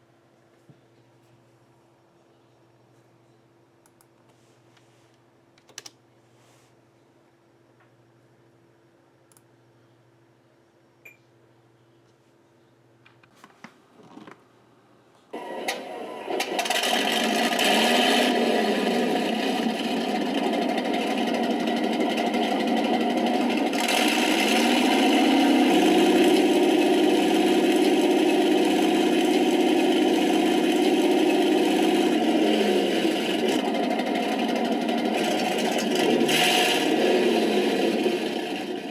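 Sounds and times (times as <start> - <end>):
simulated tank engine revving: 15.4 - 38.9.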